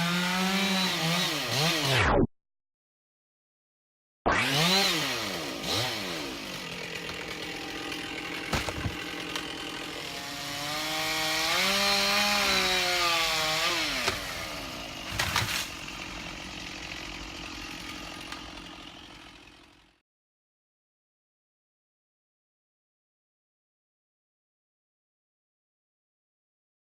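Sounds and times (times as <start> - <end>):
two-stroke chainsaw revving: 0.0 - 2.0, 4.3 - 20.0.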